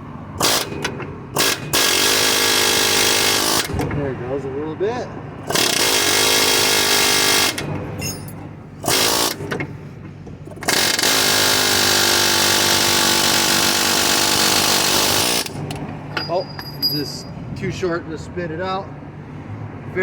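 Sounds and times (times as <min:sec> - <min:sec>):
air hammer buzzing: 0:00.4 - 0:03.7, 0:05.5 - 0:07.7, 0:08.8 - 0:09.7, 0:10.6 - 0:15.7.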